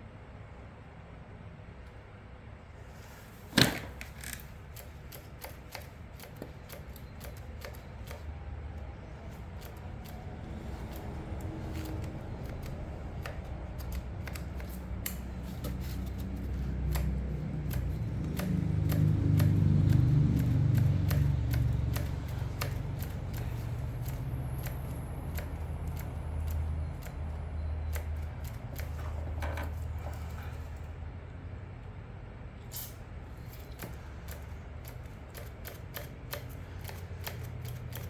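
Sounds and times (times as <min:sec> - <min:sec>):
low rumble of handling: 0:07.9 - 0:34.8.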